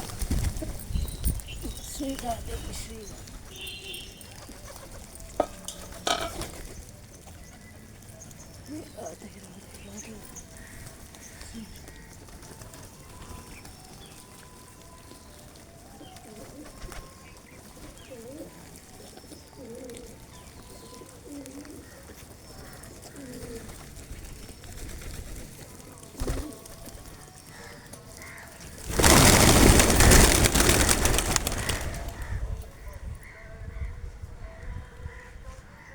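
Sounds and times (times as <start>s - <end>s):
pigeons cooing: 16.0s - 24.7s.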